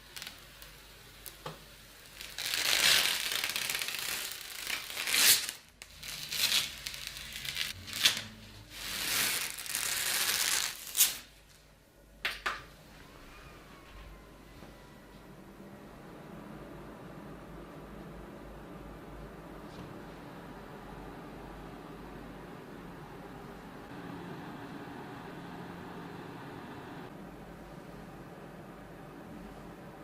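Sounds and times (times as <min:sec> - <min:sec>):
plastic and paper crinkling: 0:02.1 - 0:11.7.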